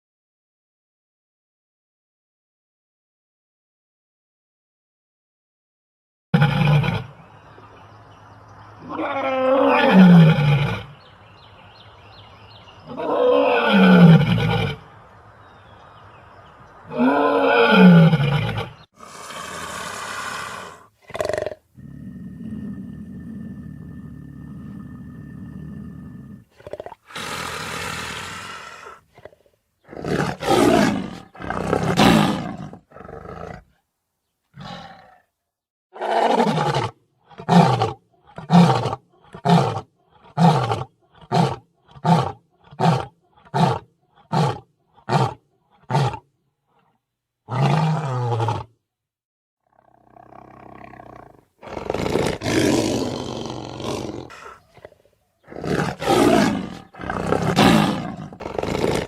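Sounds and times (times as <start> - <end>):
lion grunting roars: 16.9 - 33.7, 34.6 - 35.3, 36.0 - 46.9, 47.5 - 48.8, 49.6 - 59.0
lion roaring: 16.9 - 33.7, 34.6 - 35.3, 36.0 - 46.3, 47.5 - 48.8, 49.6 - 59.0.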